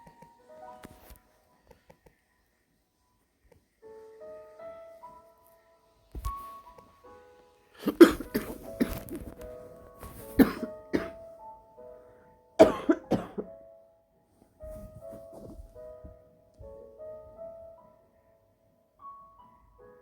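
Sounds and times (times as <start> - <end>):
soft piano music: 0.0 - 20.0
woman coughing: 7.8 - 9.2, 10.4 - 11.2, 12.6 - 13.5.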